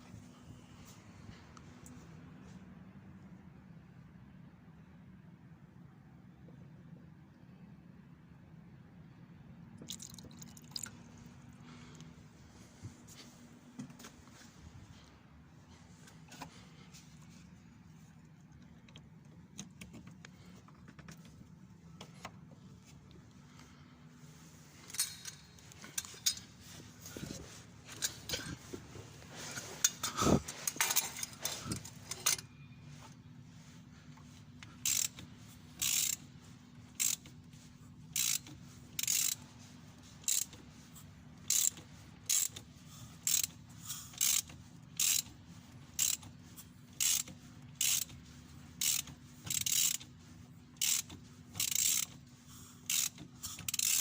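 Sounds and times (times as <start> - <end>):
tools clanking: 24.7 - 32.7
ratchet wrench clicking: 34.8 - 36.3, 36.9 - 37.4, 38.1 - 39.4, 40.2 - 40.6, 41.4 - 46.3, 47.0 - 48.2, 48.8 - 50.1, 50.8 - 52.2, 52.8 - 54.0.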